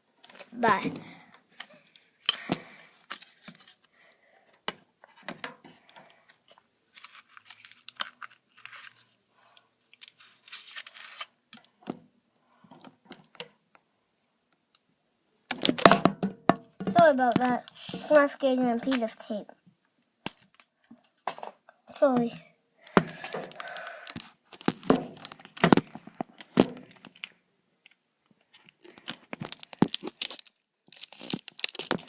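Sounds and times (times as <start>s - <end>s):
clicks and crinkles: 0.2s - 12.0s, 15.5s - 22.1s, 22.9s - 32.0s
rustling: 6.4s - 11.4s, 28.4s - 32.0s.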